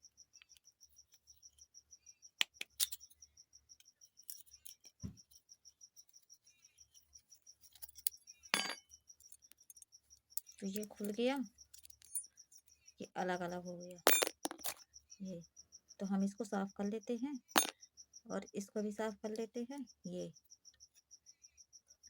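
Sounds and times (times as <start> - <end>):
small metal parts clicking: 2.4 - 3.1, 3.8 - 5.0, 7.6 - 12.3, 13.9 - 14.8.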